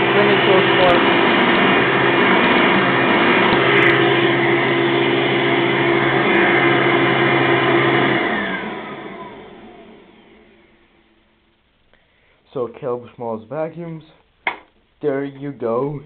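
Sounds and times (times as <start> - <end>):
upright vacuum motor whine: 0.0 - 11.2.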